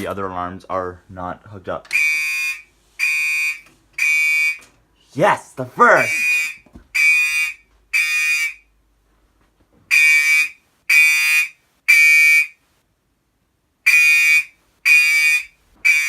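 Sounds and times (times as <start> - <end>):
fire alarm horn blasts: 1.9 - 4.7, 5.9 - 8.6, 9.9 - 12.6, 13.8 - 16.0.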